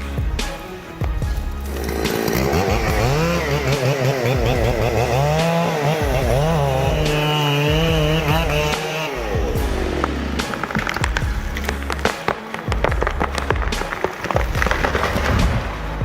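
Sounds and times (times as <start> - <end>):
chainsaw cutting wood: 0.0 - 16.0.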